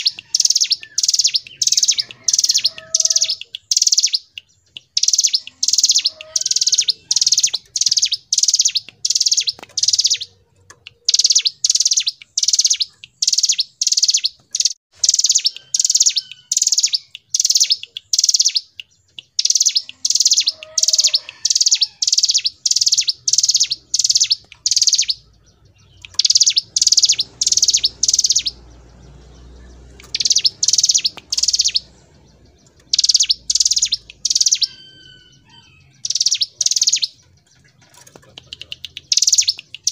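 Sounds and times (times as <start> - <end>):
bird singing high drilling song: 0.0 - 39.9.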